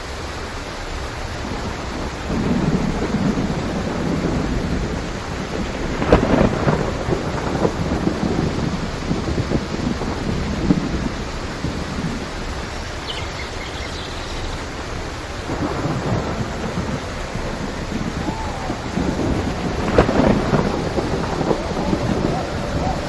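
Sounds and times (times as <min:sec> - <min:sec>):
steady rain: 0:00.0 - 0:23.0
rolling thunder: 0:01.3 - 0:23.0
faint bird calls: 0:13.0 - 0:14.6.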